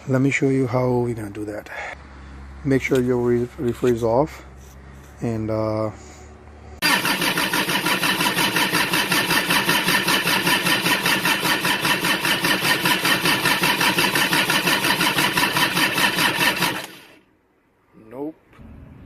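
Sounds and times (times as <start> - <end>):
diesel engine cranking: 6.7 - 17.2.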